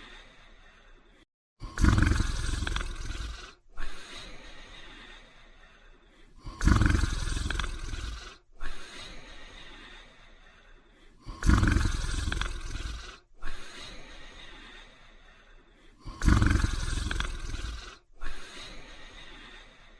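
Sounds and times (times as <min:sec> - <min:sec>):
person snoring loudly: 0:01.6 - 0:05.1, 0:06.3 - 0:09.9, 0:11.1 - 0:14.8, 0:15.9 - 0:19.8
sharp breath: 0:02.8 - 0:06.6, 0:07.2 - 0:19.9.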